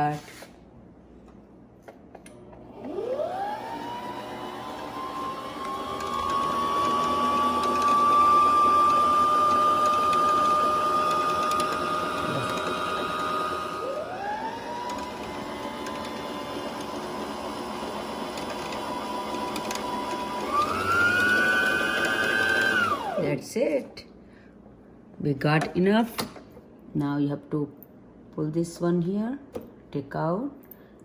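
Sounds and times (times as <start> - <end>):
sewing machine motor whine: 2.7 - 23.3.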